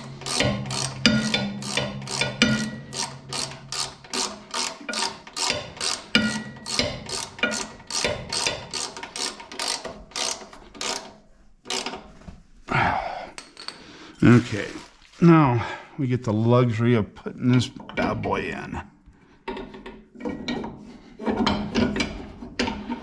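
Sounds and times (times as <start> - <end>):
ratchet wrench clicking: 0.0 - 12.0.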